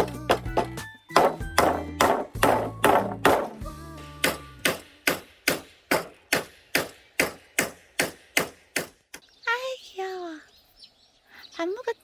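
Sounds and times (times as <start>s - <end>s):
hammer blows: 0.0s - 3.6s.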